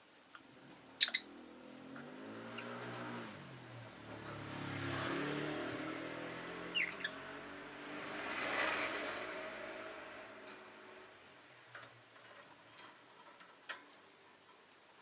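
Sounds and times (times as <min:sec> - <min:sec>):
lovebirds chirping: 0:00.9 - 0:01.4, 0:06.4 - 0:07.4
passing vehicle engine hum: 0:01.2 - 0:11.7.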